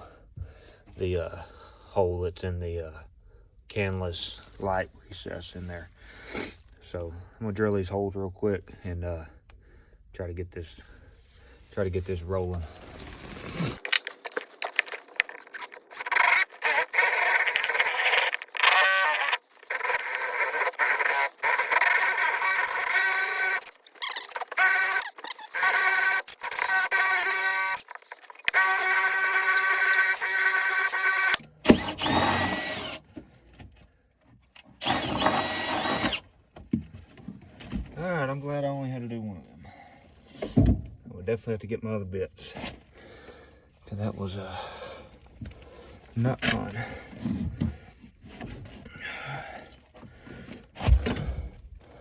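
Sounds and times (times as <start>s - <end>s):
scrapes and clicks: 12.9s - 20.0s
power drill motor whining: 12.9s - 33.1s, 34.8s - 36.2s.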